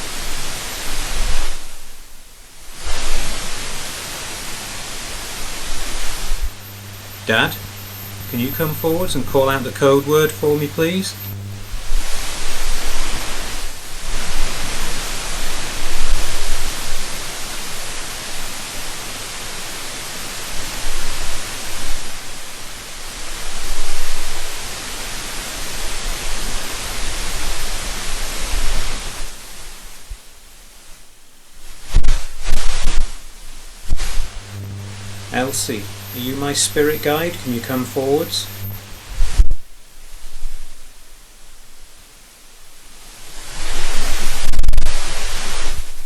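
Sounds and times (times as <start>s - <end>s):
low hum: 0.0s - 17.3s, 31.8s - 46.0s
loud static hiss: 0.0s - 46.0s.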